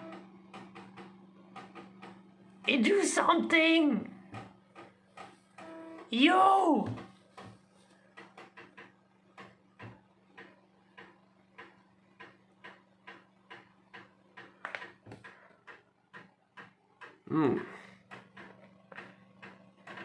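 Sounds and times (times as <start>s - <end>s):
floppy disk drive clicking: 0.0s - 2.9s, 8.1s - 17.2s, 18.0s - 20.0s.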